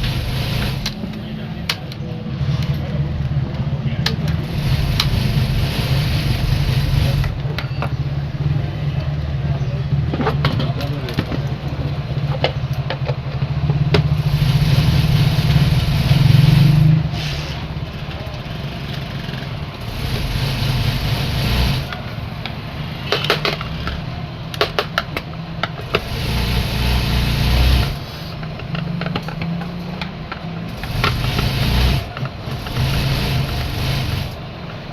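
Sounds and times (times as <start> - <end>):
small electric motor surging: 0.0 - 1.2, 4.4 - 7.4, 14.2 - 17.4, 19.8 - 22.0, 25.8 - 28.2, 30.7 - 34.4
clicks and knocks: 21.9 - 26.1.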